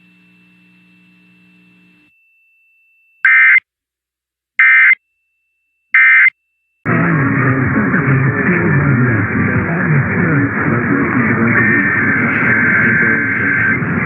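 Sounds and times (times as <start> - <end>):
warbling digital data tones: 11.2 - 14.0.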